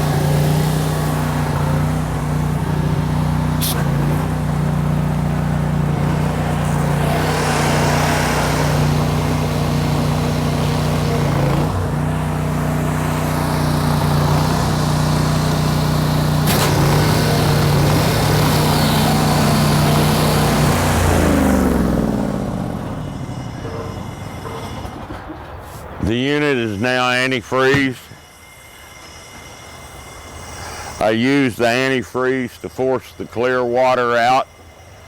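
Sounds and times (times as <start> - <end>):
pressure washer engine running: 0.0 - 24.8.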